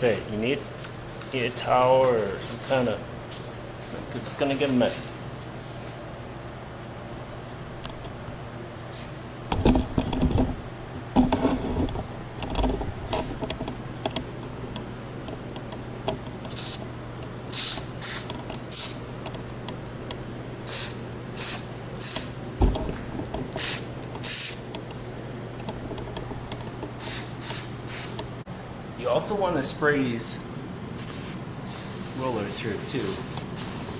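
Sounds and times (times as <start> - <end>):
steady low hum: 0.0 - 33.9
aerosol can spraying hisses: 20.7 - 22.2, 31.0 - 33.9
handling knocks and clatter: 22.6 - 27.0.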